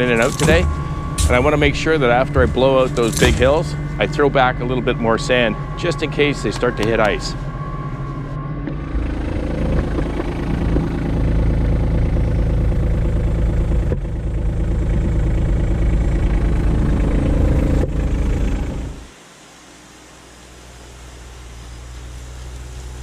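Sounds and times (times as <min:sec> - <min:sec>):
tractor diesel engine running: 0:00.0 - 0:19.1, 0:20.8 - 0:23.0
steady hiss: 0:19.1 - 0:23.0.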